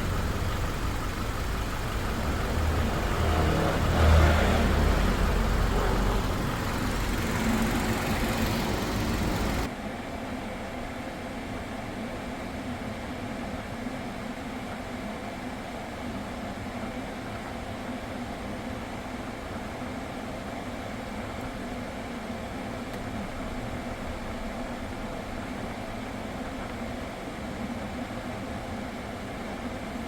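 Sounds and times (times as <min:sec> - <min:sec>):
car engine rumble: 0:00.0 - 0:09.7.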